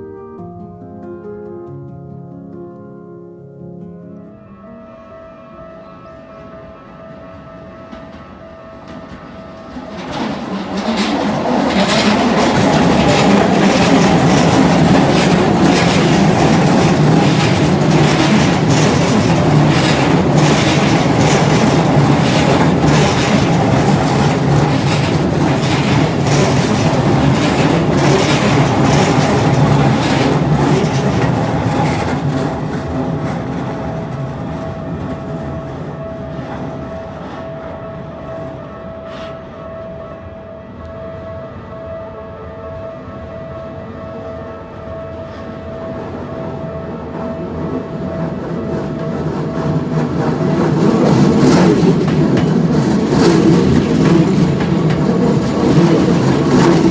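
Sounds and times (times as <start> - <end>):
level crossing warning bell: 4.6 - 56.9
train wheels clacking over rail joints: 8.9 - 35.9, 48.1 - 56.9.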